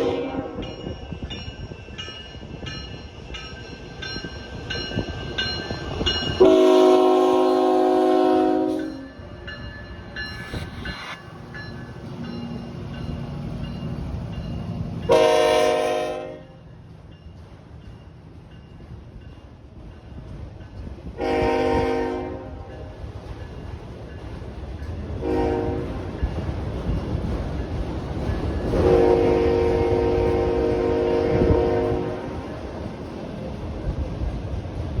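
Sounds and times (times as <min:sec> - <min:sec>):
locomotive air horn blasts: 0:00.0 - 0:00.6, 0:06.4 - 0:09.0, 0:15.1 - 0:16.6, 0:21.2 - 0:22.7, 0:25.2 - 0:25.9, 0:28.7 - 0:32.5
crossing bell ringing: 0:00.5 - 0:15.7.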